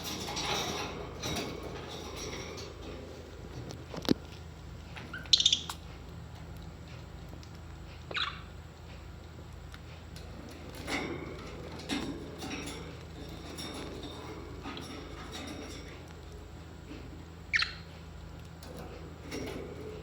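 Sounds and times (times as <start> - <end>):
steady low hum: 0.0 - 20.0
birds squawking and chirping: 4.9 - 5.9, 8.1 - 8.6, 17.5 - 18.0.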